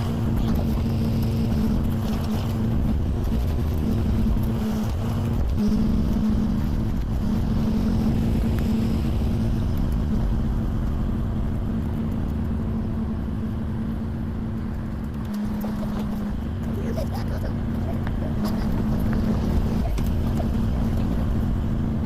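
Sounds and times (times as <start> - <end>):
heavy equipment engine running: 0.0 - 22.0.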